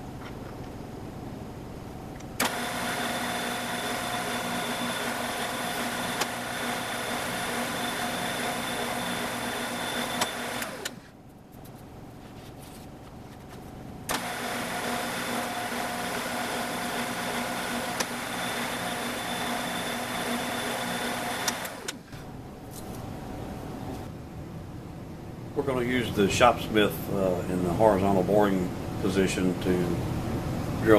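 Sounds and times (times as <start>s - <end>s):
router spindle motor whine: 2.4s - 11.1s, 14.1s - 22.1s.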